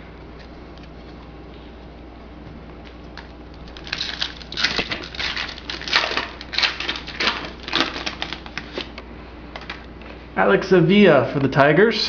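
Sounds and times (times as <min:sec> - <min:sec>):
wrapper crinkling and rustling: 0:03.6 - 0:09.0.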